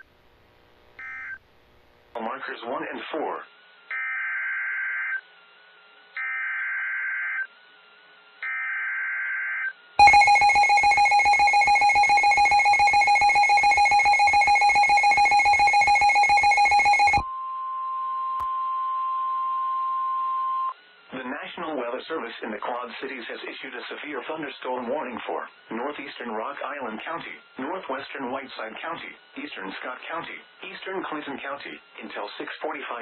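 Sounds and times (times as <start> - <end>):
steady single-tone warning alarm: 8.4 - 17.4
harsh two-tone attention signal: 10.0 - 20.8.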